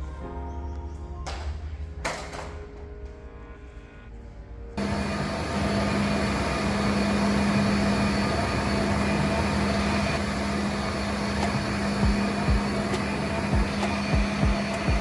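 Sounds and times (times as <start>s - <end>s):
cleaning machine motor humming: 4.8s - 15.0s.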